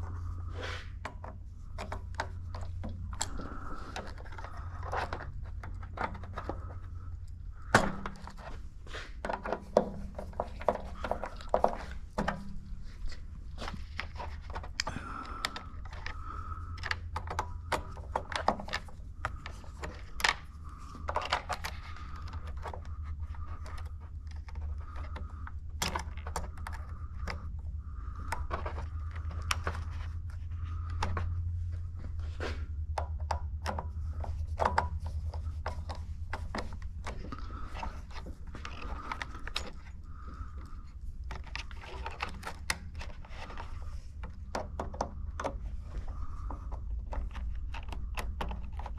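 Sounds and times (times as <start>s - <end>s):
steady low hum: 0.0s - 48.9s
screwdriver clicks and scrapes: 40.6s - 48.9s.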